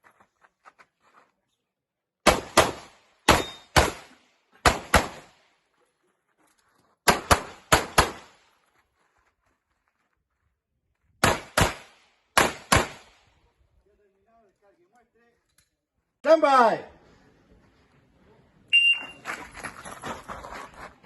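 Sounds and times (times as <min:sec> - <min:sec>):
pistol shots in double taps: 0:02.2 - 0:05.3.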